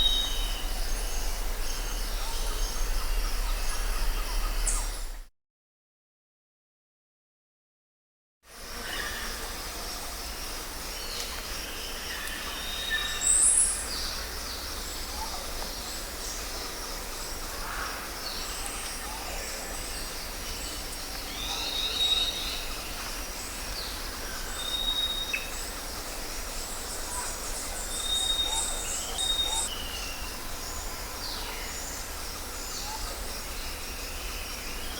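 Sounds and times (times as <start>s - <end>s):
steady background hiss: 8.5s - 34.9s.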